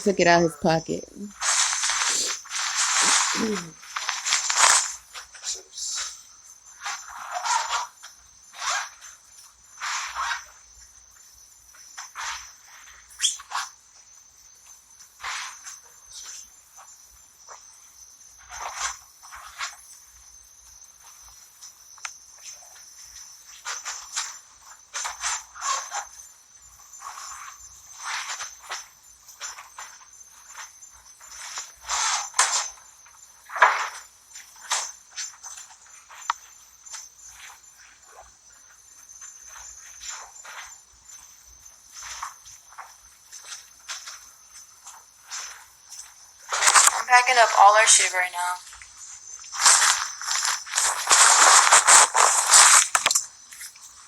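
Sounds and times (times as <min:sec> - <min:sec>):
rustling and handling noises: 0:00.0 - 0:05.6, 0:39.2 - 0:54.0
insects chirring: 0:00.0 - 0:54.0.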